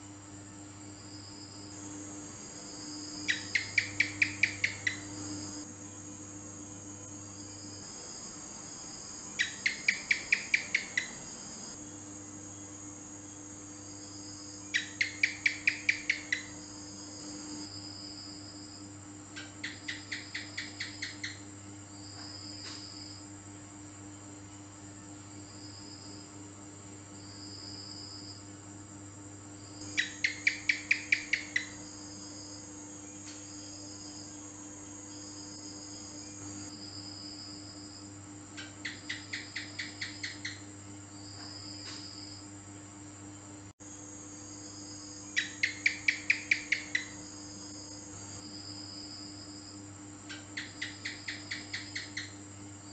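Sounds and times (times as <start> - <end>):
gecko chirping: 3.2 - 5.6, 9.4 - 11.7, 14.7 - 16.6, 19.4 - 21.4, 29.9 - 31.9, 38.6 - 40.7, 45.4 - 47.2, 50.3 - 52.4.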